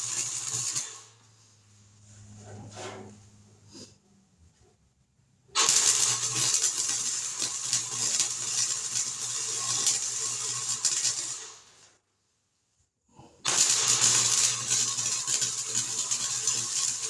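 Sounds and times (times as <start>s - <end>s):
welder crackling: 0.0s - 1.2s, 5.6s - 11.9s, 13.5s - 17.0s
low hum: 1.7s - 3.7s.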